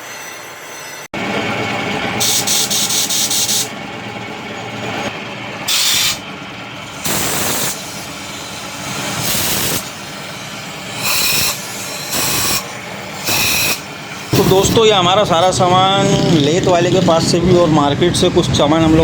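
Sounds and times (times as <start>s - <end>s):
steady mechanical hum: 0.0s - 19.0s
loud hissing bursts: 2.2s - 3.7s, 7.0s - 7.9s, 9.2s - 10.0s, 11.0s - 15.4s.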